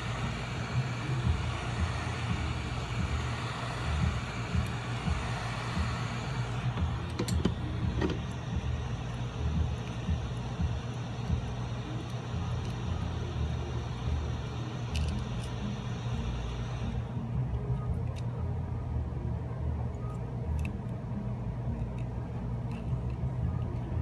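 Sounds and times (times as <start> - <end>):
hot-air blower hissing: 0.0 - 18.9.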